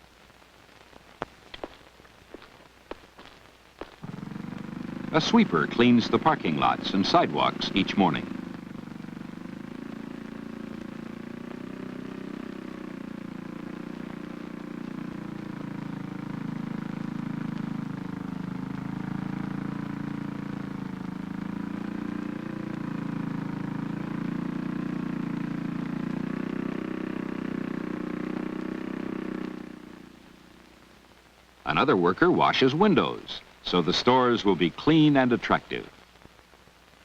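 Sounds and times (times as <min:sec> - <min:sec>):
sweeper engine running: 0:04.0 - 0:28.6.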